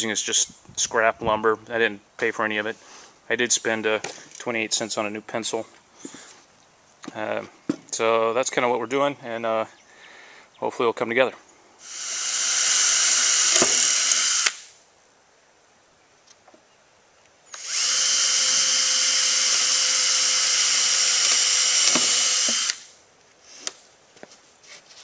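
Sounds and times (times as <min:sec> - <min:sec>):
power drill driving screws into wood: 0:11.8 - 0:14.7, 0:17.5 - 0:22.9.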